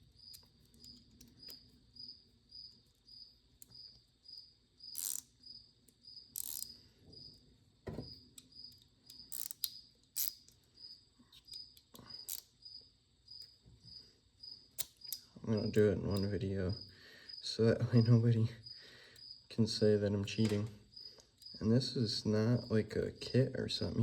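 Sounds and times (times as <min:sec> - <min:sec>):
cricket chirping: 0:00.0 - 0:24.0
tools clicking and knocking: 0:07.9 - 0:10.7.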